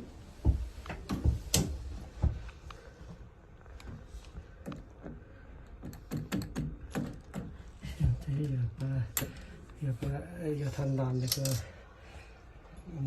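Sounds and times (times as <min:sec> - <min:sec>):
tools knocking and clicking: 0:04.6 - 0:07.6.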